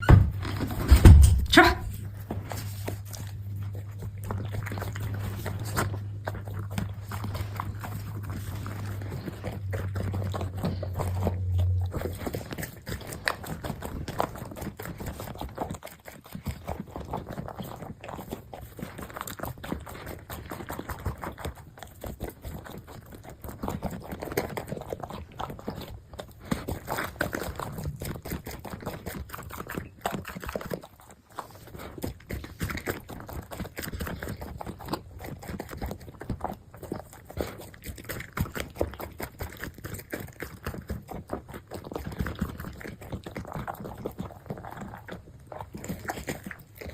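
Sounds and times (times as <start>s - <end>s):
low hum: 0.0s - 13.3s
dog crunching kibble: 0.0s - 46.9s.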